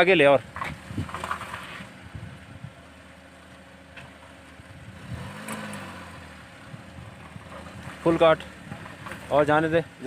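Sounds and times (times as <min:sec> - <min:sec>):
car engine at low revs: 0:00.0 - 0:10.0.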